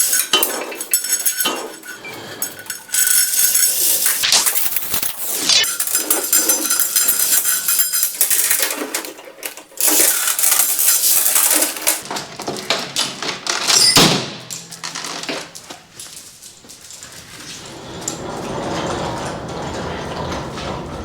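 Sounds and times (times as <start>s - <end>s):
steel tools clanking and ringing: 0.0s - 4.2s, 5.6s - 8.8s.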